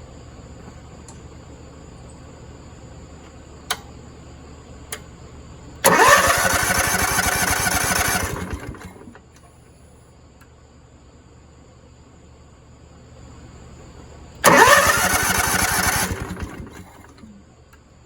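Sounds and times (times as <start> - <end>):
small engine cranking and running: 5.8 - 9.2, 14.4 - 17.3.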